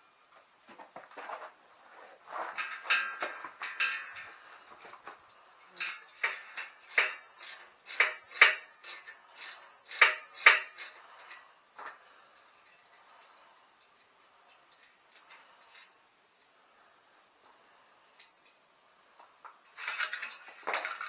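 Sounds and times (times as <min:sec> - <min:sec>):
metal tools clinking: 0:02.5 - 0:05.0, 0:05.7 - 0:12.0, 0:19.7 - 0:21.0.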